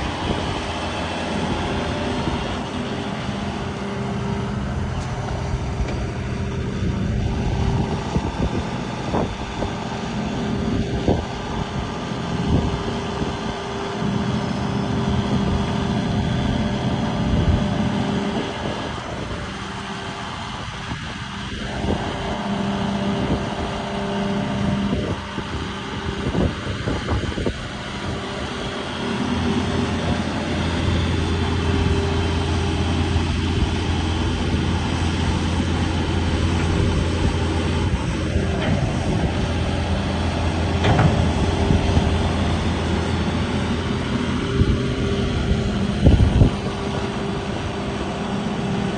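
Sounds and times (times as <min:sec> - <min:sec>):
diesel excavator engine running: 0:00.0 - 0:48.9
short knocks: 0:40.6 - 0:43.0.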